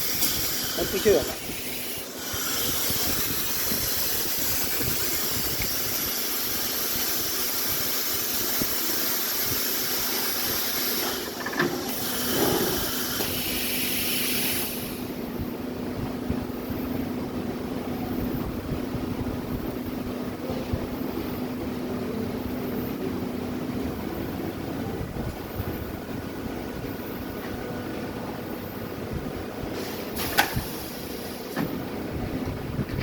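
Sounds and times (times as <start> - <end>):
welding machine hiss: 0.0 - 15.4, 29.7 - 32.0
welding machine low hum: 0.0 - 20.1.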